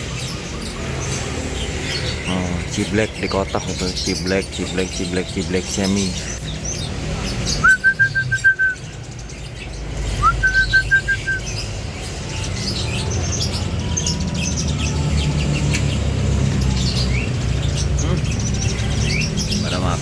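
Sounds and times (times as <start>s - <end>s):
many birds chirping faintly: 0.0s - 20.0s.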